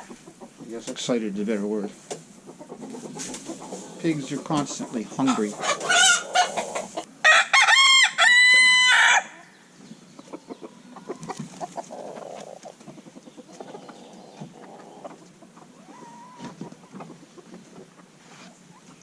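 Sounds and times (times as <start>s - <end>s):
rooster crowing: 5.9s - 9.4s.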